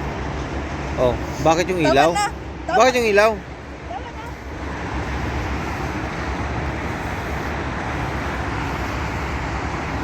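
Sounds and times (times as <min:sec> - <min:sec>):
car road noise rumble: 0:00.0 - 0:10.0
tyre and air hiss: 0:04.4 - 0:10.0.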